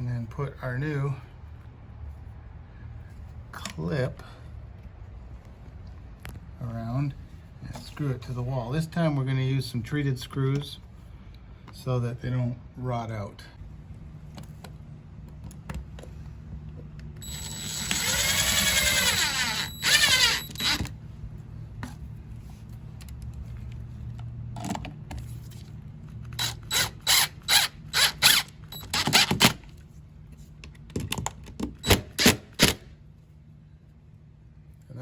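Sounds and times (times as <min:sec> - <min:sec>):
power drill driving screws: 0:17.2 - 0:20.9, 0:26.4 - 0:29.6.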